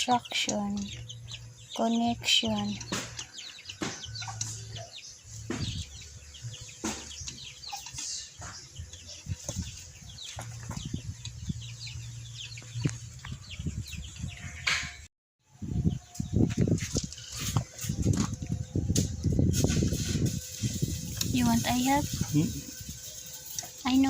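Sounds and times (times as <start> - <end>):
chickens clucking: 0.0 - 14.8.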